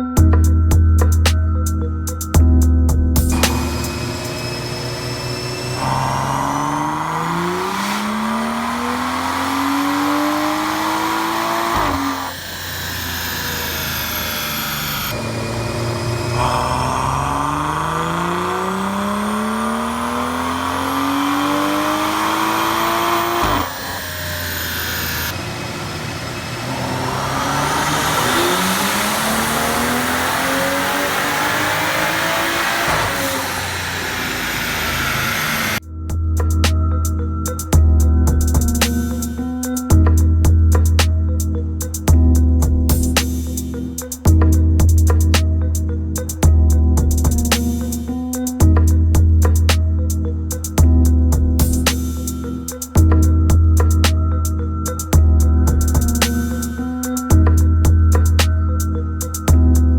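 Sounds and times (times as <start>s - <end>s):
high whine: 0.0s - 59.9s
car engine revving at full throttle: 3.3s - 35.8s.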